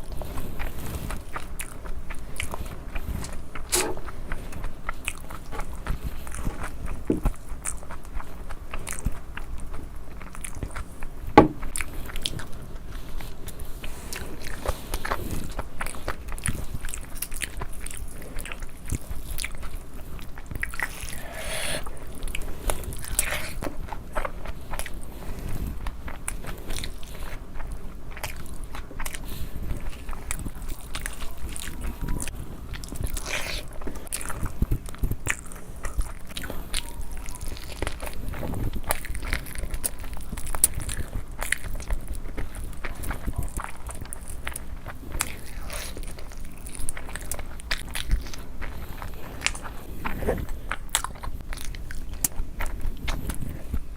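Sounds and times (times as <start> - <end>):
chewing and crunching: 0.0 - 53.9
small wet mouth clicks: 3.3 - 4.3, 20.6 - 21.9.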